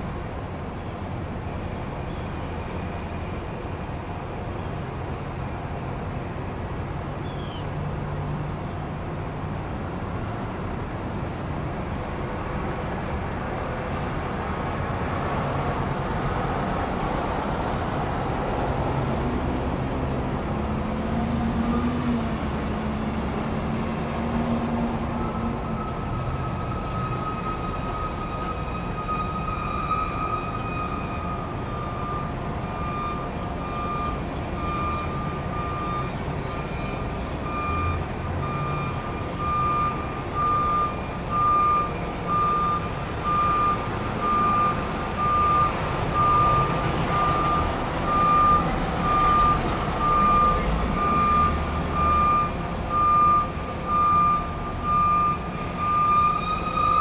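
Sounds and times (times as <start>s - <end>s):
truck engine rumbling: 0.0s - 57.0s
reversing alarm beeping: 24.0s - 57.0s.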